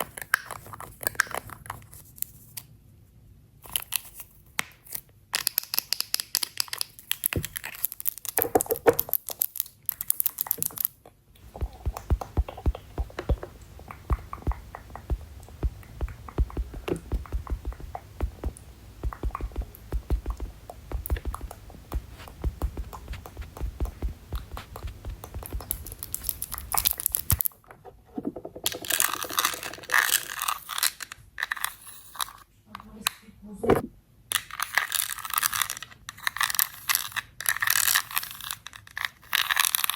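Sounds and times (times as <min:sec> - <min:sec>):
rapid light tapping and clicking: 0:11.4 - 0:27.4
soft thumps: 0:11.4 - 0:27.4
crinkling and rustling: 0:11.4 - 0:27.5.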